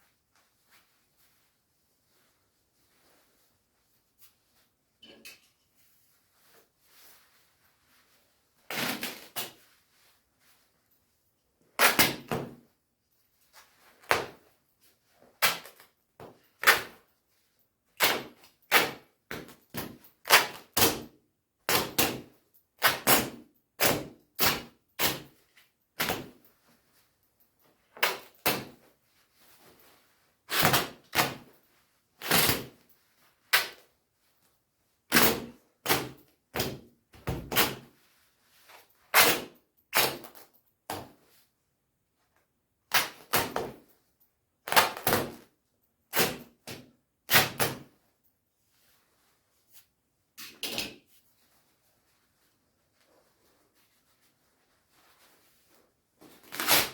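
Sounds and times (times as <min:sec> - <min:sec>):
fabric ripping: 0:56.4 - 0:56.9.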